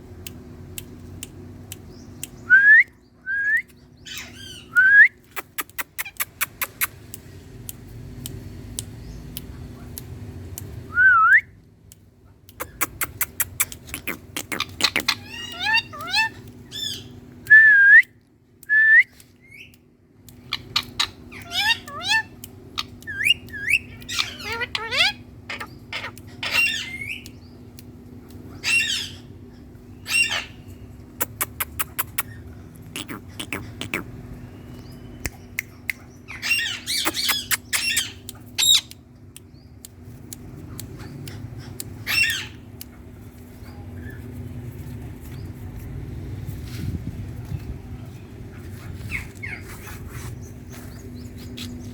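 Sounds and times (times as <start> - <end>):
parrot clicks and chirps: 3.6 - 10.9, 11.8 - 29.2, 30.1 - 44.6
sharp clicks: 5.2 - 10.8, 11.8 - 16.6, 31.2 - 34.1
parakeet squawking: 12.6 - 17.1, 20.4 - 27.2, 28.6 - 29.3, 30.0 - 30.6, 31.2 - 34.2, 36.3 - 38.9, 42.0 - 42.7.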